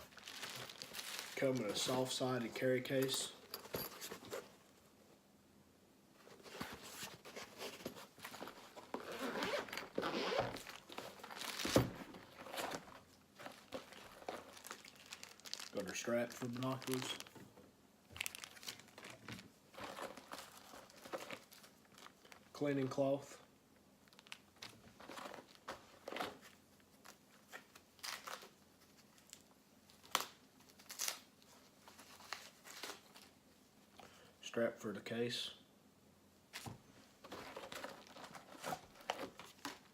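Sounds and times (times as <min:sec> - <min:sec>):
fabric rustling: 0:00.0 - 0:01.9
packaging rustling and crinkling: 0:00.0 - 0:02.8, 0:06.2 - 0:22.6, 0:24.0 - 0:33.3, 0:36.6 - 0:39.9
zipper being pulled open: 0:08.9 - 0:10.7.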